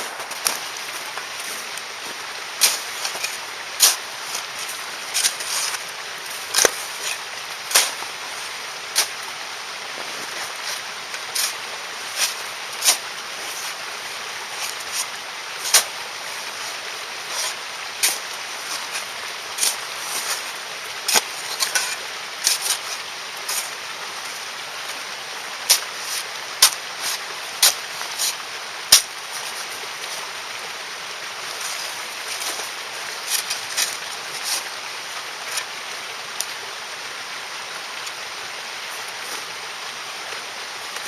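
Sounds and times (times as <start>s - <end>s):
campfire crackling and popping: 0.0s - 30.4s
steady hiss: 0.0s - 41.0s.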